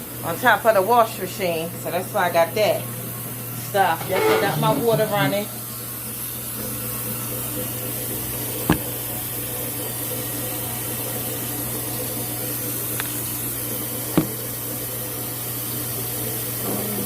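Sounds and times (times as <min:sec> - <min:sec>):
tap water running into sink: 0:04.8 - 0:17.0
sharp knocks of items handled: 0:08.7 - 0:09.0, 0:14.1 - 0:14.4.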